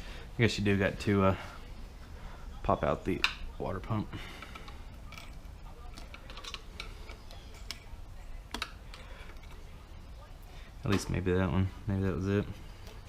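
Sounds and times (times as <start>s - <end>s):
faint low hum: 0.0s - 13.0s
hand tools and metal parts clicking: 4.2s - 9.7s.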